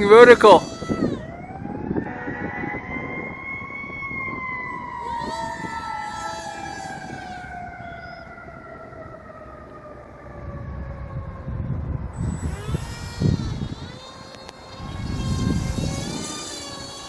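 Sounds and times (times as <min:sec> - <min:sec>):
model jet motor whining: 0:00.0 - 0:02.1, 0:04.2 - 0:08.3, 0:12.1 - 0:17.0
wind buffeting microphone: 0:00.0 - 0:17.0.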